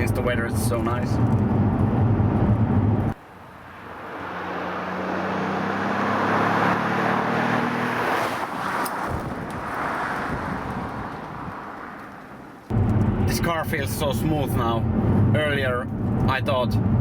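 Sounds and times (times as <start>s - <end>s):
in-car engine and road noise: 0.0s - 17.0s
car driving past: 2.9s - 13.9s.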